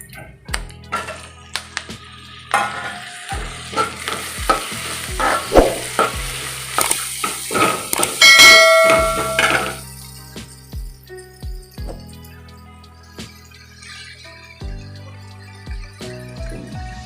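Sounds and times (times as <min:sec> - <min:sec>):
food frying in hot oil: 0:01.0 - 0:17.0
spoon stirring and scraping pan: 0:02.5 - 0:09.8
metallic ringing tone: 0:08.2 - 0:10.3.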